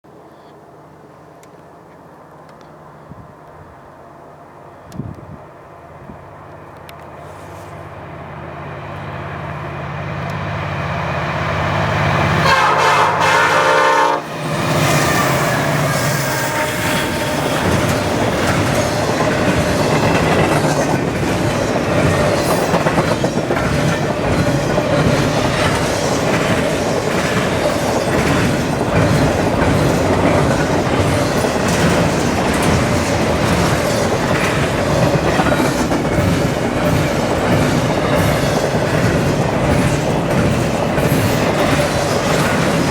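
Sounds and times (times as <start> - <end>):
diesel locomotives rumbling: 0.1 - 42.9
locomotive air horn blast: 12.4 - 17.8
freight cars clickety-clack: 16.8 - 42.9.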